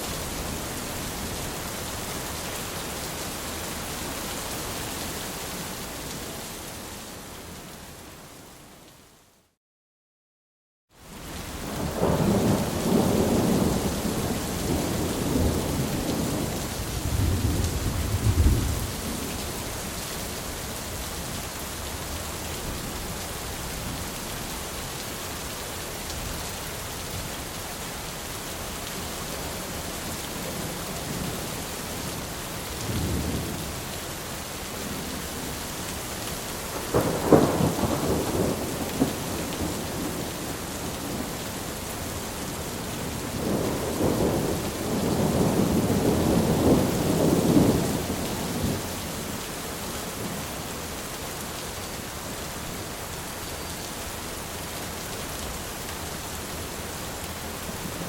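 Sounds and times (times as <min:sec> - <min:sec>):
steady rain: 0:00.0 - 0:09.6, 0:10.9 - 0:58.0
rolling thunder: 0:11.8 - 0:19.2, 0:36.7 - 0:40.3, 0:43.3 - 0:48.8.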